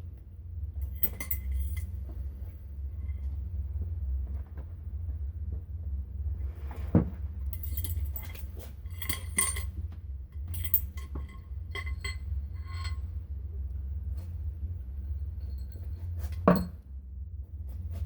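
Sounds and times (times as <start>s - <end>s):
metal parts clinking: 0.8s - 1.9s, 7.6s - 9.7s, 10.4s - 13.0s.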